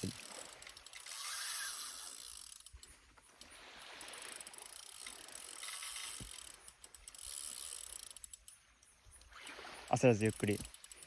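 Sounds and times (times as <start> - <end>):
fishing reel ratcheting: 0.0 - 11.0.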